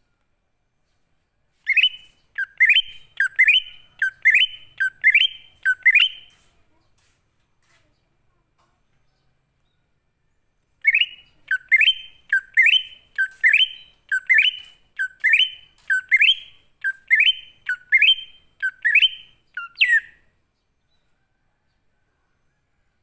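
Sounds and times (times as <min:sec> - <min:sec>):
bird singing repeated notes: 0:01.7 - 0:06.4, 0:10.8 - 0:20.3.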